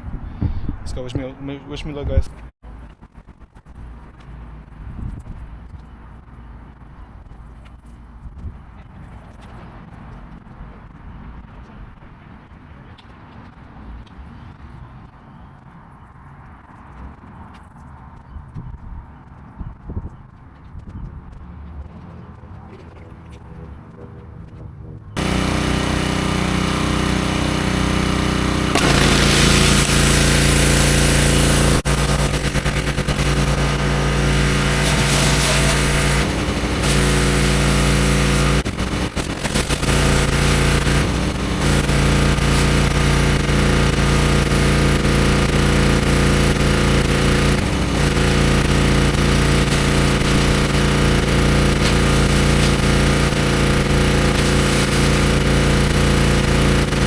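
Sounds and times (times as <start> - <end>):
pressure washer engine running: 25.2 - 57.0
water jet hissing on concrete: 28.4 - 57.0.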